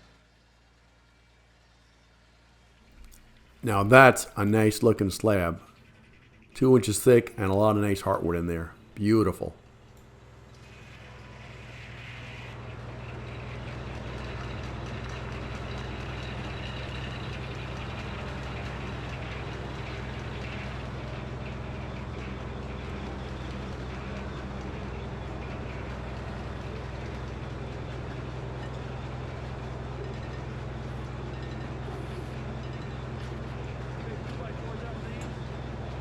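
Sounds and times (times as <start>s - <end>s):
sawmill engine hum: 3.0s - 6.0s, 6.6s - 9.5s.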